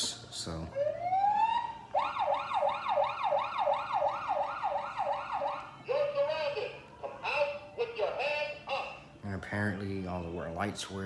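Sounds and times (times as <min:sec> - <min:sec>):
toy electronic siren: 0:00.8 - 0:06.8.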